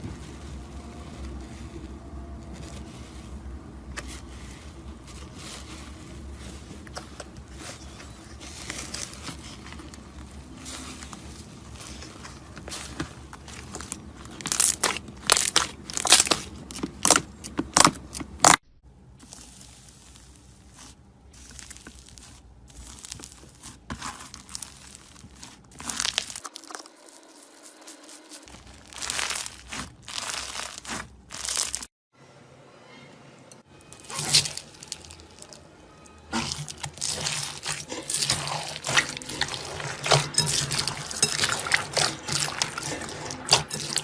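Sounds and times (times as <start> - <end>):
slime squeezed by hands: 13.6 - 18.6, 27.7 - 31.9.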